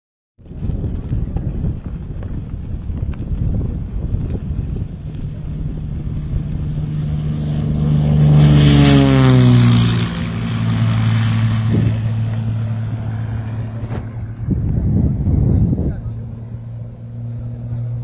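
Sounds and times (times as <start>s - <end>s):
propeller plane flying past: 0.4s - 18.0s.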